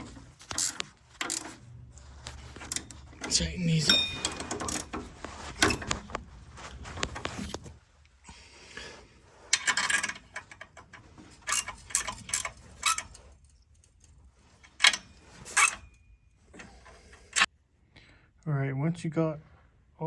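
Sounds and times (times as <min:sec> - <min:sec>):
ratchet wrench clicking: 0:00.3 - 0:01.6, 0:11.4 - 0:13.2.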